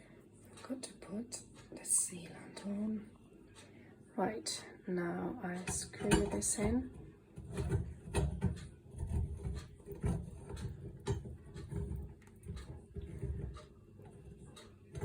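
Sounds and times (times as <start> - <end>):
fitting rubbing and clicking on tap: 7.4 - 15.0.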